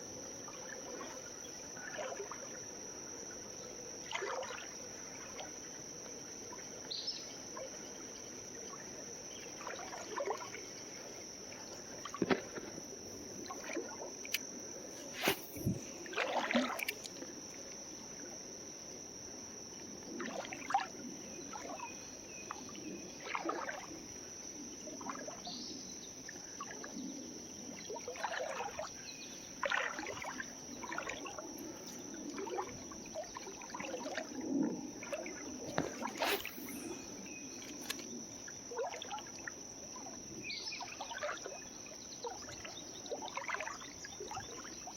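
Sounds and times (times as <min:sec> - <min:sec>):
high-pitched insect drone: 0:00.0 - 0:44.9
creek water trickling: 0:27.9 - 0:44.9.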